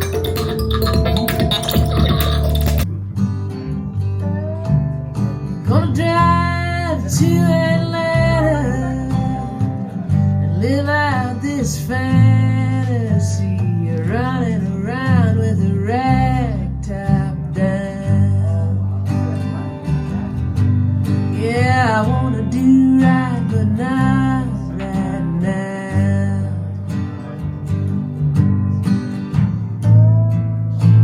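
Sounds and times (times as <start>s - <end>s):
sliding melodic line: 0.0s - 2.9s
guitar and bass music on loudspeakers: 0.0s - 31.0s.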